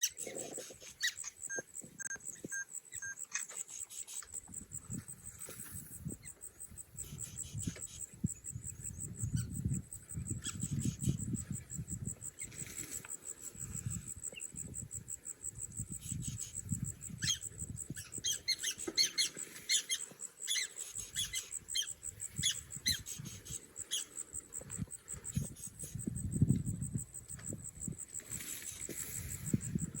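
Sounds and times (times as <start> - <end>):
bird calls: 0.0 - 4.4, 16.0 - 26.0
insect chorus: 0.0 - 30.0.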